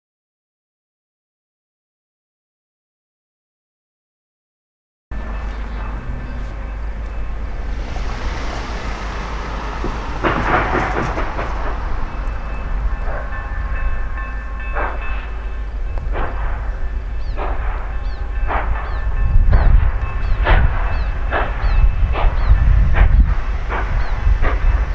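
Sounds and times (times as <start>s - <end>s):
low rumble: 5.1s - 24.9s
steam locomotive chuffing: 5.1s - 24.9s
steam hissing: 5.2s - 24.9s.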